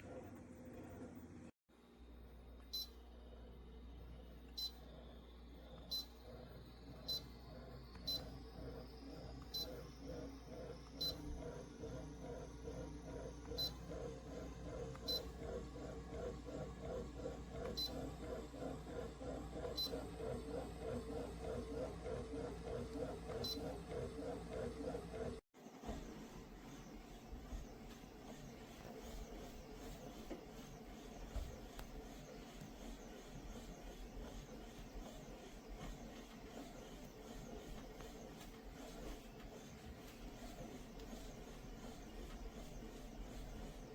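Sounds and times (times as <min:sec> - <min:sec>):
pedal exerciser whirring: 0:02.7 - 0:43.9
high-pitched machine beeps: 0:11.0 - 0:11.2.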